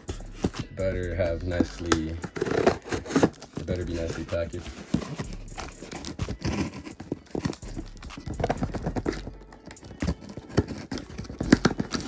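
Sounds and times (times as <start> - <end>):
packing paper rustling: 1.8 - 5.2, 5.8 - 12.0.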